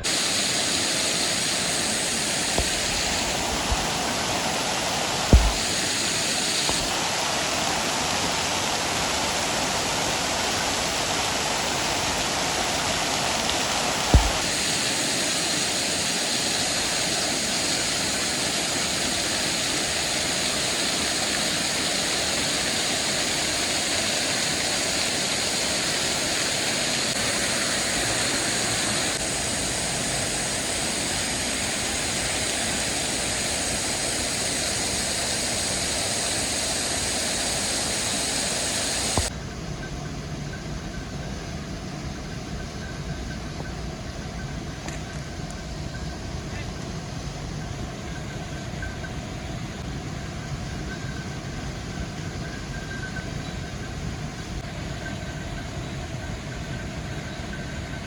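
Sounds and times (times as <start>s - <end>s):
waterfall rushing: 0.0s - 39.3s
short thumps: 5.3s - 5.7s, 14.2s - 14.4s.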